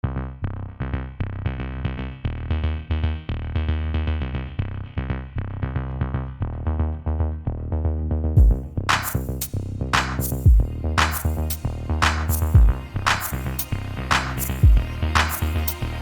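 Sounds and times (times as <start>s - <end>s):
strong bass line: 0.0s - 16.0s
drum machine beat: 8.4s - 15.8s.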